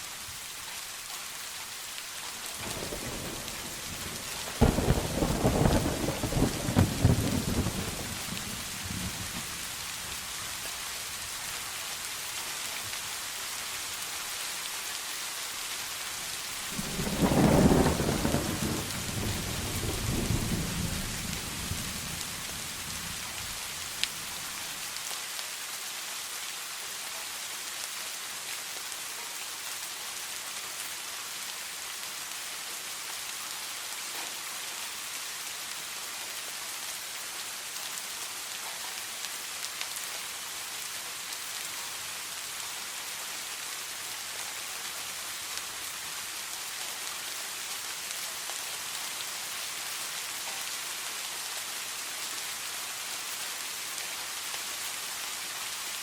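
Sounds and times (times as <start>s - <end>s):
heavy rain falling: 0.0s - 56.0s
thunderclap rumbling: 2.6s - 9.6s, 16.7s - 24.4s.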